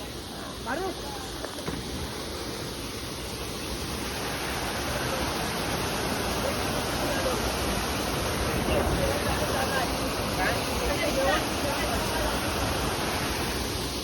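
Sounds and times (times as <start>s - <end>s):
waterfall rushing: 0.0s - 14.0s
faint voices: 4.2s - 13.6s.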